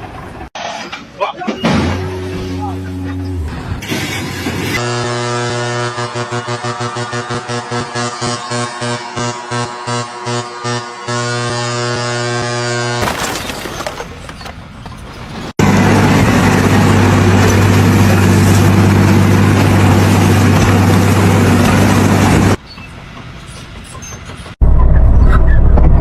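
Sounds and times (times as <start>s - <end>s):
loud machine humming: 4.8s - 13.3s, 15.6s - 22.6s.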